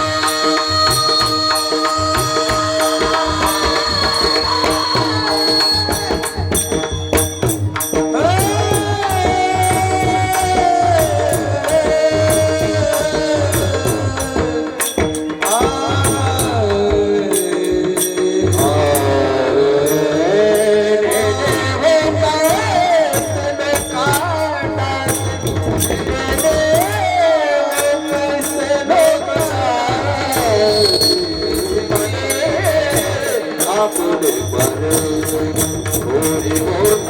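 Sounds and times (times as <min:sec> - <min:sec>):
person singing long notes: 0:00.0 - 0:07.0
hand drum beat: 0:00.0 - 0:37.0
small metal percussion: 0:00.0 - 0:37.0.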